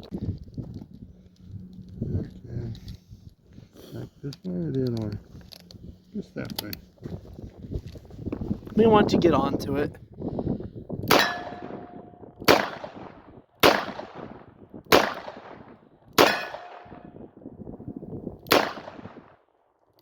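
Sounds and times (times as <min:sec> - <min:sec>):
short metallic ring: 0:11.2 - 0:12.2.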